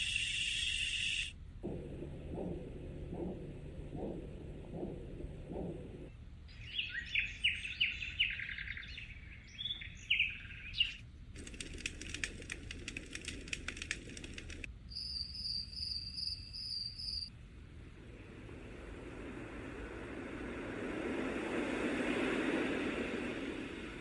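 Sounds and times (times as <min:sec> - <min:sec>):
birdsong of down-sweeping chirps: 0:00.0 - 0:12.5, 0:14.0 - 0:24.0
low throbbing heartbeat sound: 0:01.4 - 0:06.5
dense fast crackle of clicks: 0:11.3 - 0:14.7.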